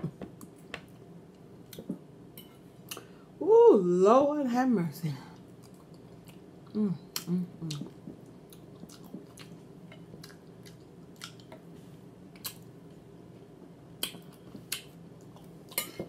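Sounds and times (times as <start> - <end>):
person chewing food: 5.4 - 16.0.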